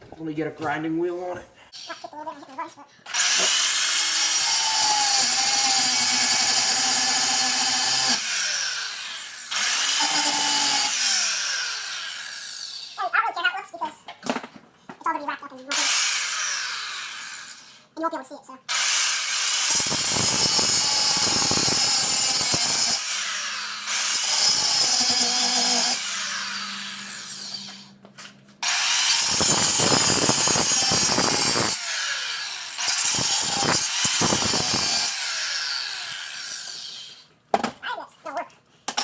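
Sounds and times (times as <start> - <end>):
grinding wheel cutting metal pipe: 3.1 - 12.7, 18.8 - 27.9, 28.6 - 37.2.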